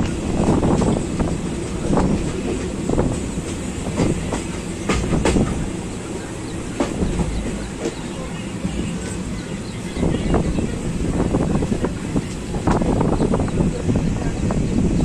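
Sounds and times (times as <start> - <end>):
wheels clacking over rail joints: 0.0 - 9.6
train rumbling on rails: 0.0 - 15.0.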